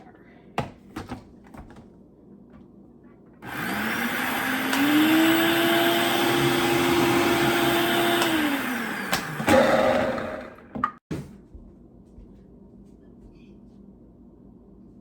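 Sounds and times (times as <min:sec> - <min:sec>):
food processor motor whirring: 0:03.4 - 0:10.8.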